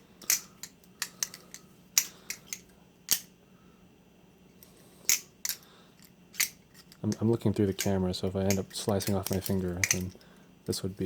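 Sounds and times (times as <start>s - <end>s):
knife handles clicking: 0.2s - 3.3s, 5.1s - 10.2s.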